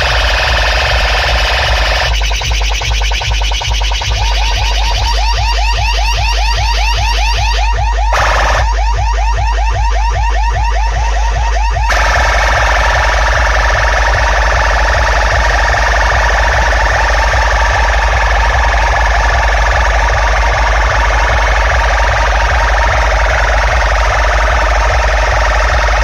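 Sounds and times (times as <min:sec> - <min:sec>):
electronic siren sweeps: 0:00.0 - 0:26.0
heavy pulsing bass: 0:00.0 - 0:26.0.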